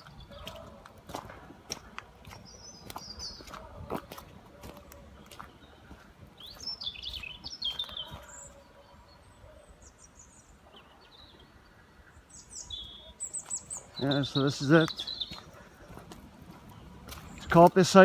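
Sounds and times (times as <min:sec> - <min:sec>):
small birds twittering: 0:00.0 - 0:18.0.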